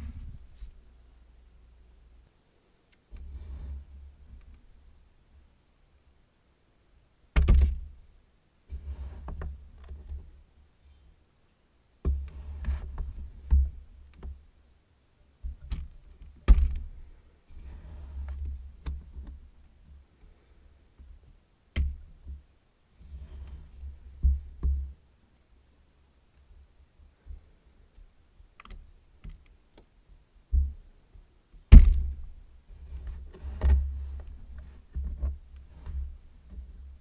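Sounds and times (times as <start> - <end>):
soft scraping of sand: 0.0 - 0.8
dull thuds in sand: 31.7 - 32.1.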